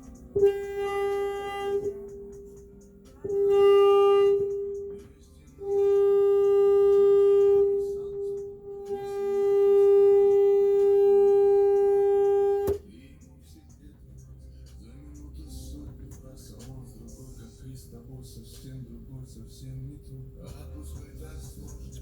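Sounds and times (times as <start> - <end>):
guitar amplifier tone: 0.0 - 12.9.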